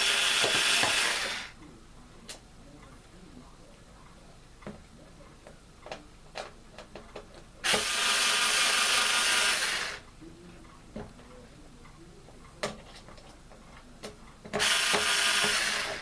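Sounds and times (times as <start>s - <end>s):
loud even rasping noise: 0.0s - 1.6s, 7.6s - 10.1s, 14.6s - 16.0s
fan parts clicking and knocking: 4.6s - 9.5s, 10.1s - 16.0s.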